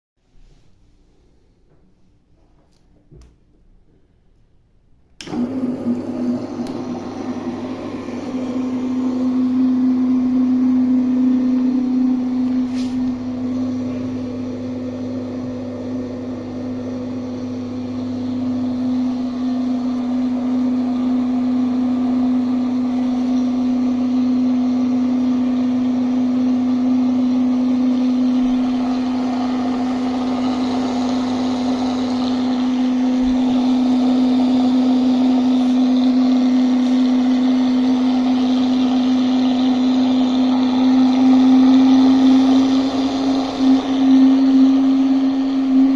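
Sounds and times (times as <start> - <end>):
cooling fans humming: 5.1 - 45.9.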